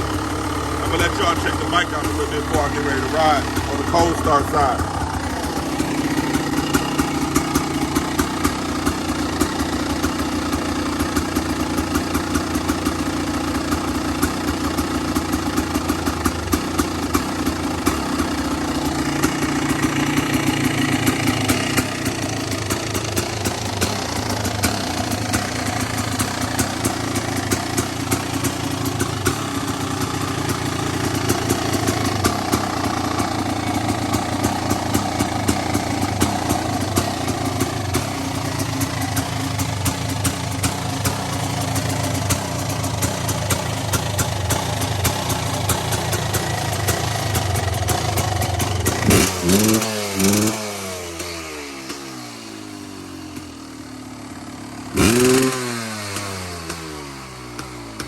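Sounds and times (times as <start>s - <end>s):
engine revving: 0.0s - 8.6s, 41.9s - 53.6s, 54.9s - 58.0s
two-stroke engine idling: 0.0s - 58.0s.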